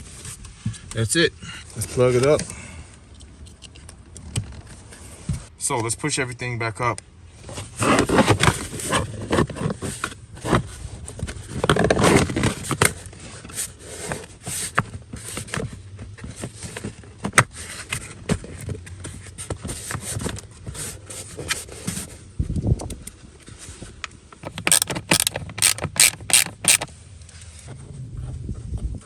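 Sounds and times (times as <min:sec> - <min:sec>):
parts scraping and knocking: 0:24.3 - 0:26.9
sharp clicks: 0:24.4 - 0:26.9.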